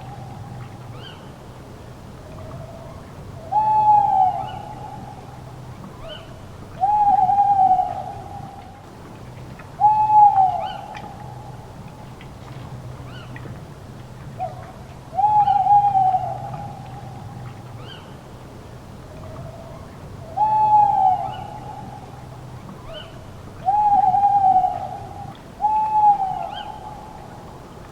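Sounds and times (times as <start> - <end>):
low steady hum: 0.0 - 27.9
owl hooting: 3.4 - 5.0, 6.8 - 8.4, 9.8 - 11.0, 15.2 - 17.1, 20.3 - 22.0, 22.9 - 27.0.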